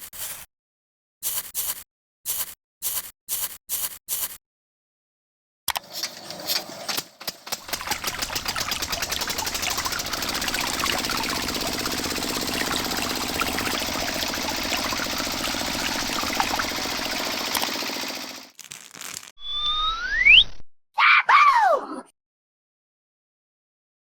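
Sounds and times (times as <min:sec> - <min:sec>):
small electric motor rattling: 0:05.8 - 0:18.6.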